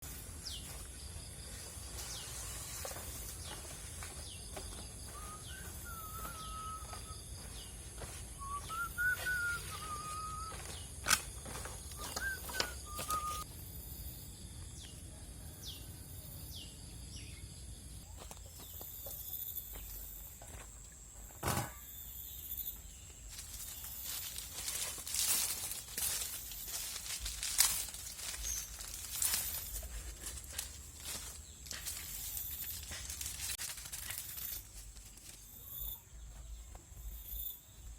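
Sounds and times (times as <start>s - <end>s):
warbling whistled bird song: 4.6s - 13.5s.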